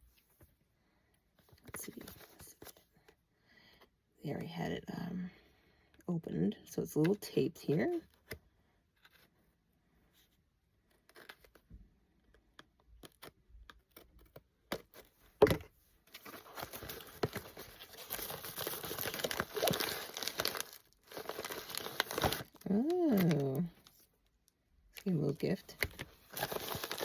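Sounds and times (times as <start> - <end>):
packaging rustles and taps: 13.0 - 24.0, 25.7 - 27.0
wrapping crinkling and tearing: 16.1 - 24.4, 25.3 - 27.0
packaging ripping: 16.2 - 24.0, 25.8 - 27.0.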